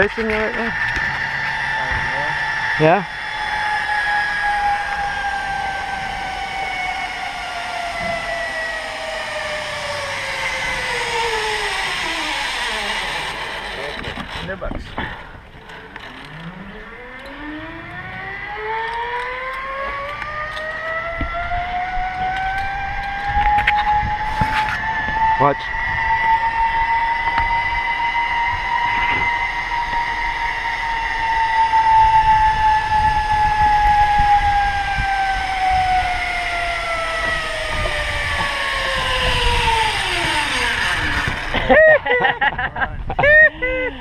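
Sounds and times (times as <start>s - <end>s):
low rumble: 0.0s - 18.5s, 19.1s - 44.0s
zip line pulleys whining: 0.0s - 44.0s.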